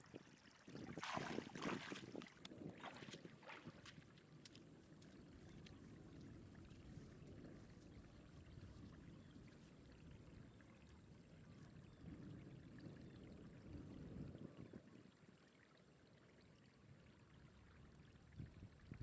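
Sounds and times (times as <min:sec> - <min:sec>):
water sloshing: 0:00.8 - 0:05.1.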